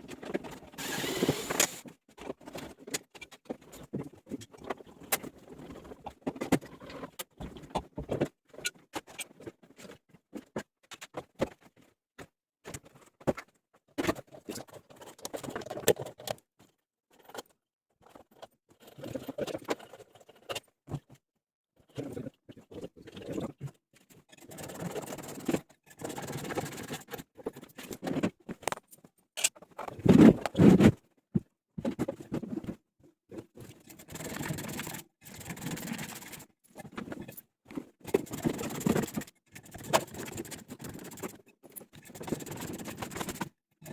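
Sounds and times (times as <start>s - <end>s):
tools and machine parts clicking and scraping: 0.1s - 3.9s, 17.1s - 20.7s, 33.6s - 43.9s.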